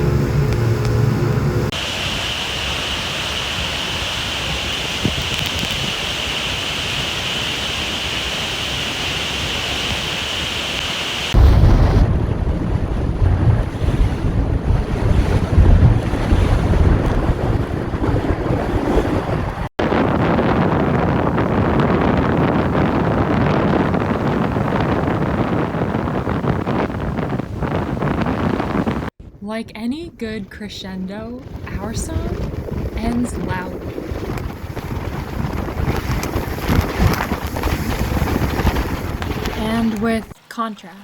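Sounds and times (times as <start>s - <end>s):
surf: 0.0s - 29.1s, 30.9s - 40.6s
rushing water hiss: 1.7s - 11.4s
wind buffeting microphone: 3.0s - 40.4s.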